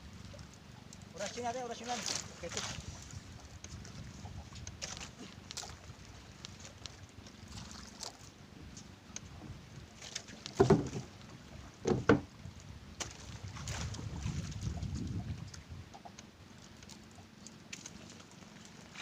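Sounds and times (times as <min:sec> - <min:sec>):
water rumbling against hull: 0:00.0 - 0:19.0
loud knocks: 0:11.8 - 0:12.3.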